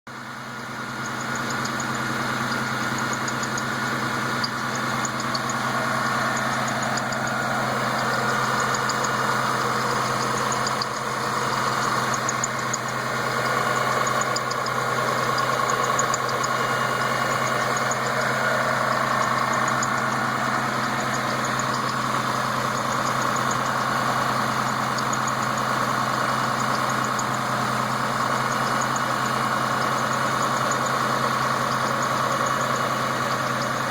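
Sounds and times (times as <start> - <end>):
car engine idling: 0.1 - 33.9
drive belt chirping squeak: 0.6 - 33.9.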